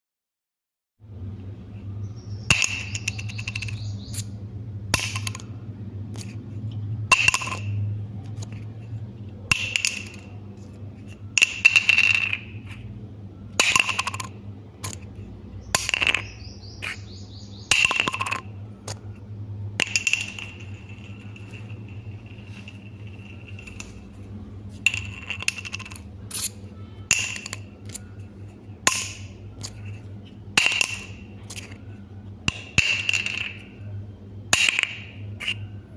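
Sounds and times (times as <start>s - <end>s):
low hum: 1.0s - 35.9s
bottle cap clicking and rattling: 2.5s - 4.3s, 5.0s - 5.5s, 7.1s - 8.6s, 9.5s - 10.4s, 11.1s - 12.8s, 13.6s - 15.1s, 15.7s - 17.0s, 17.7s - 19.0s, 19.8s - 24.1s, 24.8s - 28.2s, 28.9s - 30.0s, 30.6s - 31.8s, 32.5s - 33.8s.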